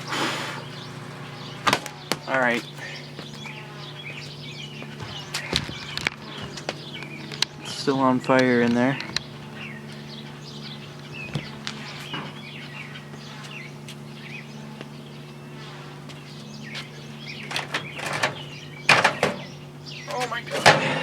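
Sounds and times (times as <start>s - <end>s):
microwave oven humming: 0.0s - 21.0s.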